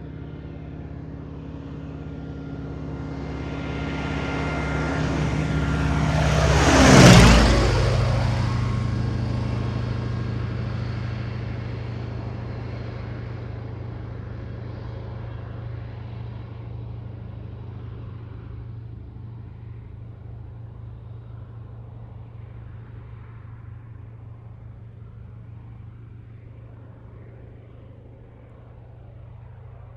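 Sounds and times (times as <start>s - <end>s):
propeller plane engine drone: 0.0s - 29.9s.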